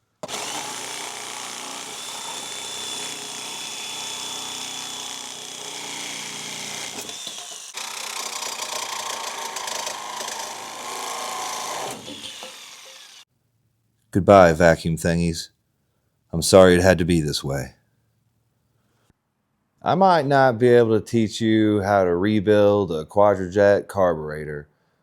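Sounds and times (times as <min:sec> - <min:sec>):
reciprocating saw cutting metal: 0:00.2 - 0:13.2.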